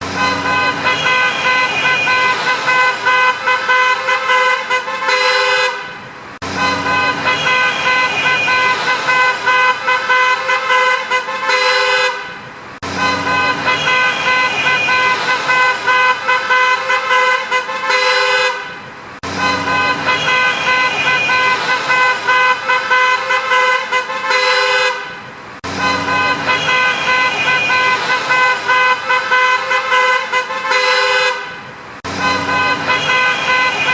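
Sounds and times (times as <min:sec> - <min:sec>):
car horns honking: 0:00.0 - 0:33.9
cars passing: 0:00.0 - 0:33.9.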